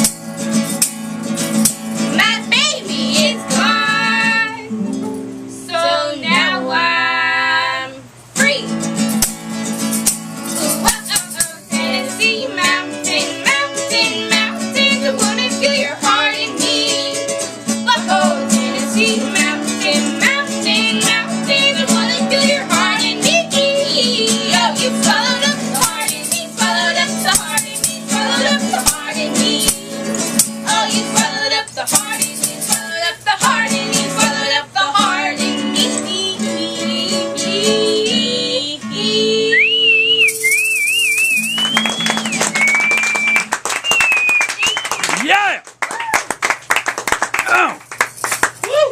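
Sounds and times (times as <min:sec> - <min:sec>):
acoustic guitar: 0:00.0 - 0:48.9
shaker rattle: 0:09.1 - 0:12.1, 0:25.1 - 0:33.6, 0:40.3 - 0:41.7, 0:47.9 - 0:48.7
whistled melody: 0:39.5 - 0:45.2.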